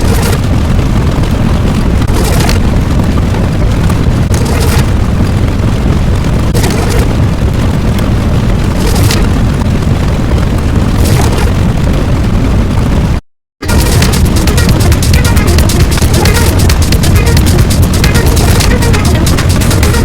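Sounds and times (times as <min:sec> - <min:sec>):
deep explosion rumble: 0:00.0 - 0:20.0.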